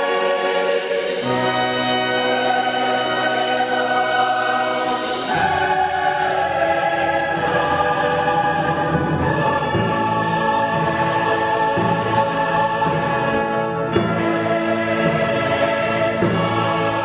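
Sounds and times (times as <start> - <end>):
choir holding long notes: 0.0 - 17.0
orchestra sustained chords: 0.0 - 17.0.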